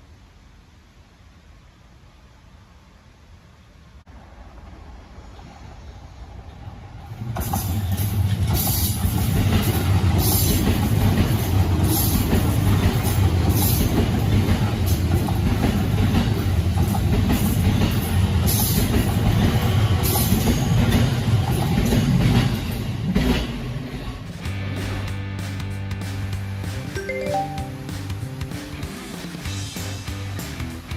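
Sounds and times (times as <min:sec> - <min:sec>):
train wheels rumbling on rails: 0:04.1 - 0:25.1.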